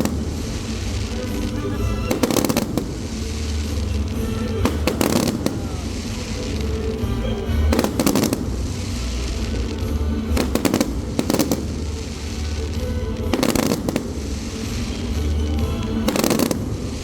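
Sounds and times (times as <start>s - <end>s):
background music: 0.0s - 17.0s
fireworks bangs and crackles: 0.0s - 17.0s.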